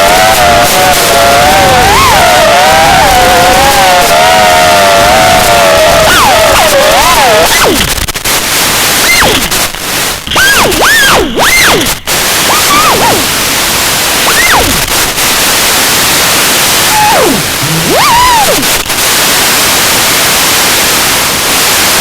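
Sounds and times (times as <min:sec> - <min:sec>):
drone motors whining: 0:00.0 - 0:07.9, 0:10.2 - 0:14.9, 0:16.7 - 0:18.8.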